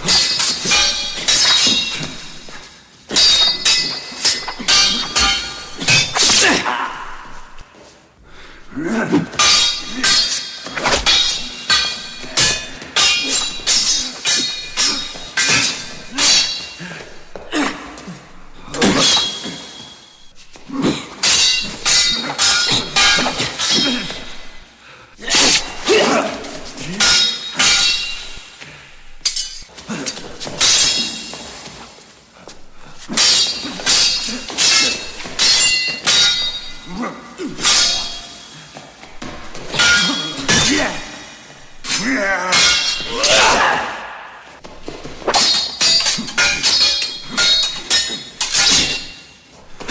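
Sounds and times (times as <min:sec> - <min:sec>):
swords clashing: 0:00.0 - 0:49.9.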